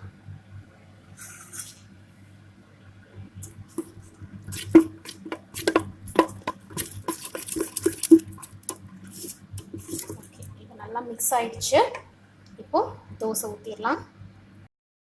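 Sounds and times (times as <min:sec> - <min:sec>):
spoon scraping batter in vessel: 0:03.4 - 0:10.6.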